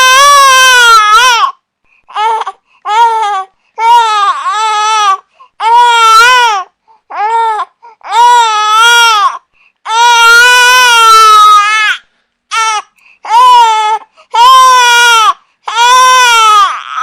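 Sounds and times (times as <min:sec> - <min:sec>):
infant crying: 0:00.0 - 0:17.0
infant gasping for breath: 0:05.2 - 0:05.6, 0:06.8 - 0:07.1, 0:07.7 - 0:08.1, 0:12.9 - 0:13.3, 0:14.0 - 0:14.4.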